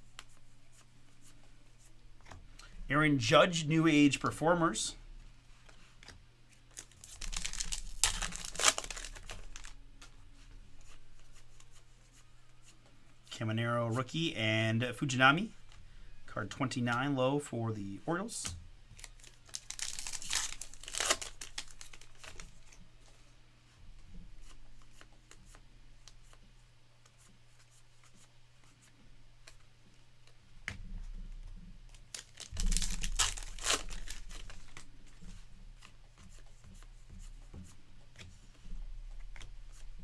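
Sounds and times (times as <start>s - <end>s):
card pack wrappers crinkling and tearing: 6.7s - 9.8s, 19.0s - 22.6s, 32.0s - 34.9s.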